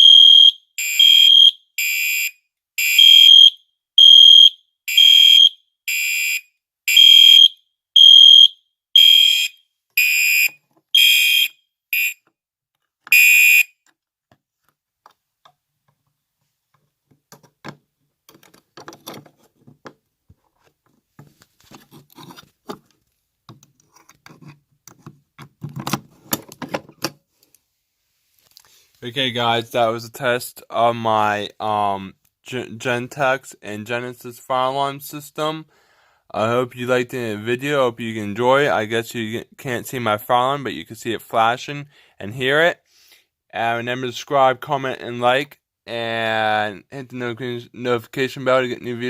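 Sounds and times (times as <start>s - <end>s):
fire alarm horn blasts: 0.0s - 12.2s, 13.1s - 13.7s
faint clicks and handling noise: 13.8s - 27.7s, 28.3s - 29.0s.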